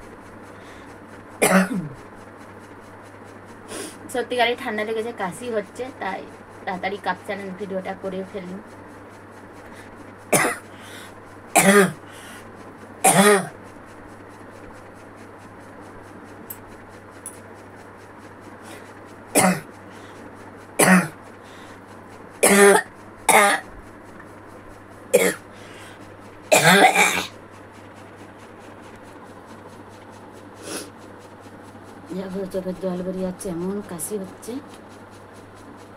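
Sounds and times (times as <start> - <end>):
woman coughing: 1.4 - 2.0, 10.4 - 10.6, 11.6 - 12.0, 13.1 - 13.5, 19.4 - 19.7, 20.8 - 21.2, 22.4 - 23.6, 25.2 - 25.4, 26.5 - 27.3.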